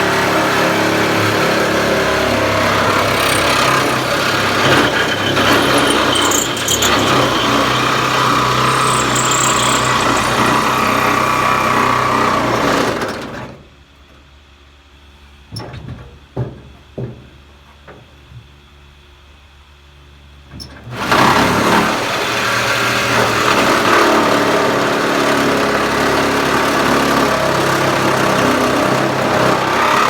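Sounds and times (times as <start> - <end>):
power tool cutting sheet metal: 0.0 - 13.1, 21.0 - 30.0.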